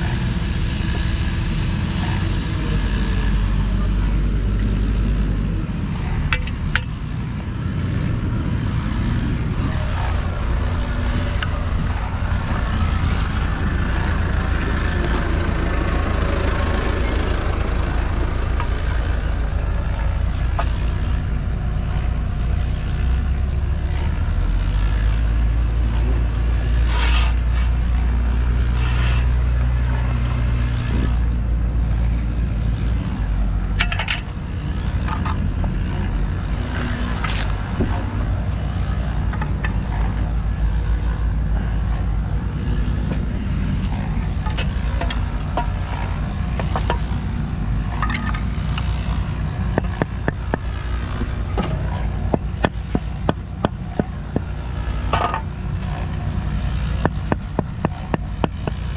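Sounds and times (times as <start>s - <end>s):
engine running with low rumble: 0.0s - 58.9s
short clicks and scrapes: 26.8s - 27.8s, 28.7s - 29.4s.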